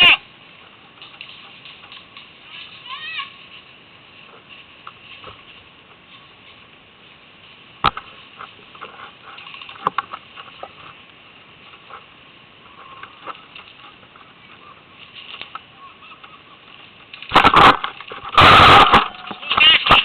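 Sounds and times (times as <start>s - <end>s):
faint rustling: 0.0s - 18.4s
loud burst of noise: 17.3s - 20.0s.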